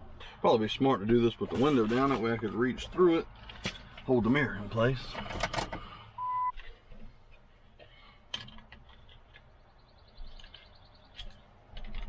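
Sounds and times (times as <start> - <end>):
handling clicks and knocks: 5.1 - 5.8
short electronic beep: 6.2 - 6.5.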